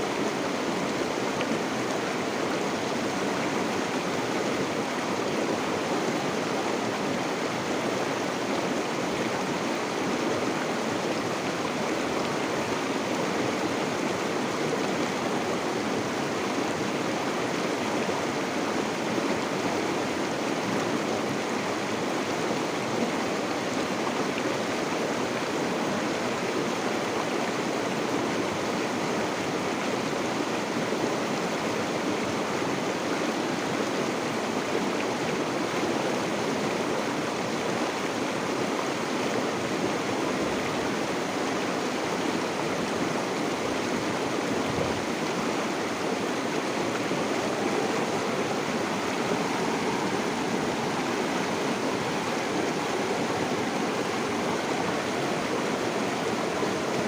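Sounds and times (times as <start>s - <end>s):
stream water flowing: 0.0s - 57.0s.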